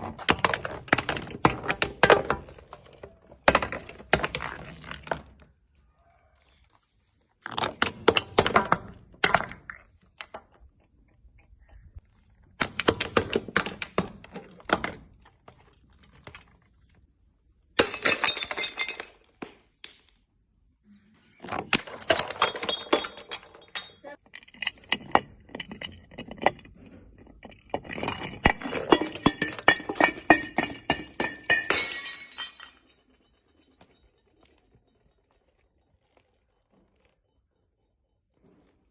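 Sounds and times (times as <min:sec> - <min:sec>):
glass bottles breaking and crunching: 0:17.7 - 0:20.2, 0:21.4 - 0:35.6.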